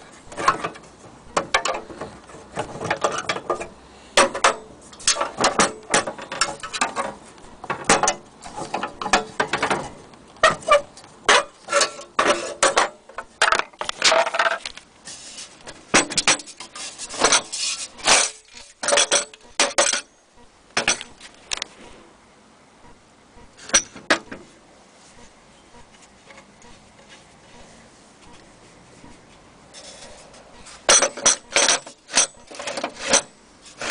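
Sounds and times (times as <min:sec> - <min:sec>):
metal parts clinking and clanking: 0:00.3 - 0:14.8, 0:15.9 - 0:20.1, 0:20.8 - 0:21.2, 0:23.6 - 0:24.3, 0:29.8 - 0:33.9.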